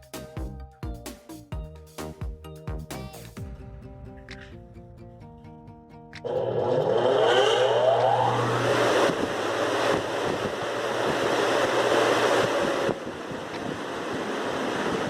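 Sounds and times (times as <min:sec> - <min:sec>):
motor spinning up fan: 0:06.3 - 0:15.0
steady rush of air: 0:06.3 - 0:15.0.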